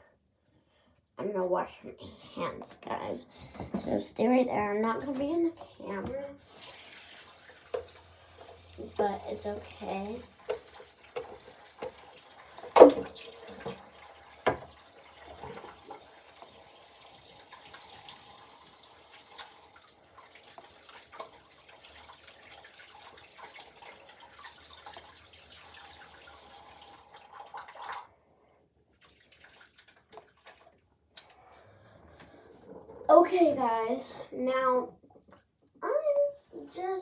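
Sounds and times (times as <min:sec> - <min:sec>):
tap water running into sink: 0:04.7 - 0:28.1, 0:29.0 - 0:30.9.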